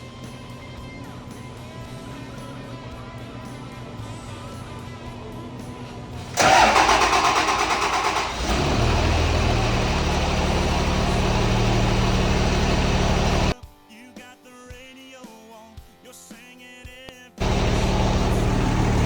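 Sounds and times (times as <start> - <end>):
diesel engine idling: 6.0 - 13.5, 17.4 - 19.0
diesel engine cranking: 6.1 - 13.6, 17.4 - 19.0.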